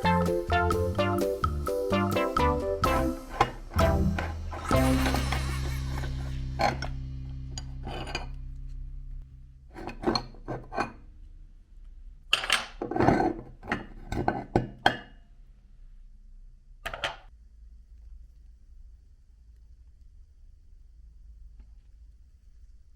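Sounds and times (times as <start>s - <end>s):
low steady hum: 0.0s - 12.8s.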